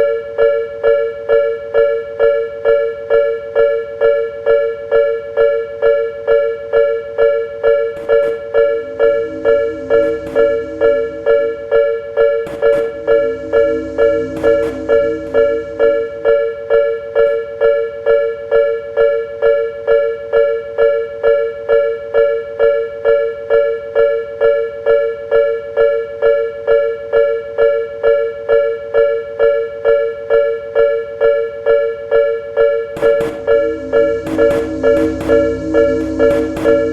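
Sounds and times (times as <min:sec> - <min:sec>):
level-crossing two-tone bell: 0:08.0 - 0:17.1, 0:33.0 - 0:36.9
low hum with hiss: 0:08.0 - 0:17.4, 0:33.0 - 0:36.9.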